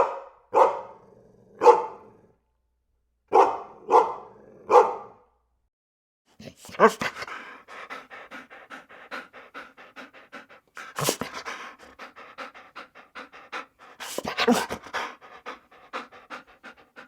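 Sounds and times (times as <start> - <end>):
dog panting: 6.4 - 17.0.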